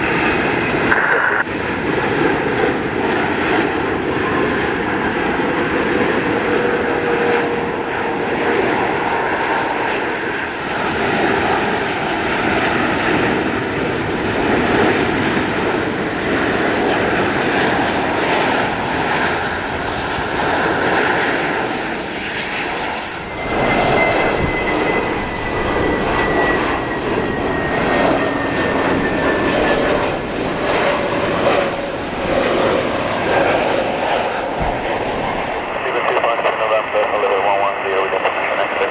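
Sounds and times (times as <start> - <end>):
jet engines roaring: 0.0 - 38.9
high whine falling in pitch: 19.6 - 36.0.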